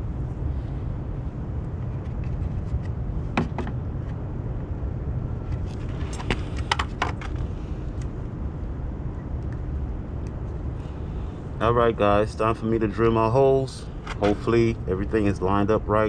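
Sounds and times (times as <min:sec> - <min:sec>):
low rumble: 0:00.0 - 0:06.7.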